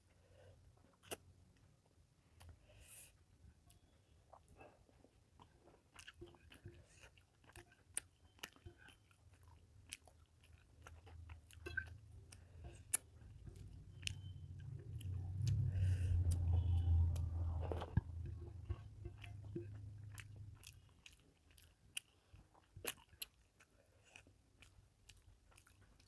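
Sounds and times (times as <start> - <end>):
person chewing food: 0.8 - 1.3, 2.4 - 26.0
low hum: 11.7 - 20.8.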